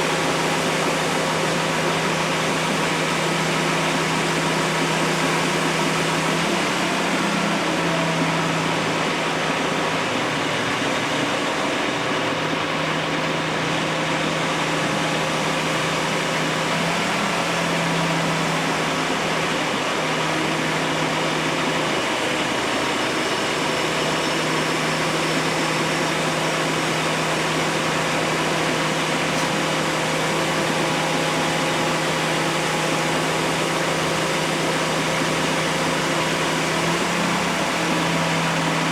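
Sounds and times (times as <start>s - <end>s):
machine droning: 0.0s - 38.9s.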